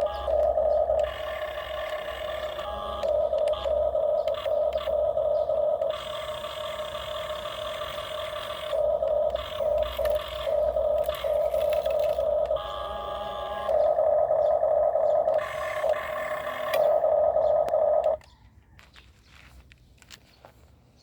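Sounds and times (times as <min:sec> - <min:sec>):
small electric motor whining: 0:00.0 - 0:18.3.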